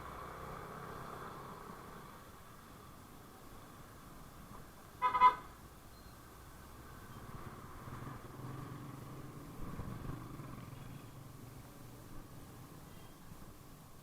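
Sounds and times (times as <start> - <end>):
road noise: 0.0 - 14.0
vehicle horn honking: 5.0 - 5.4.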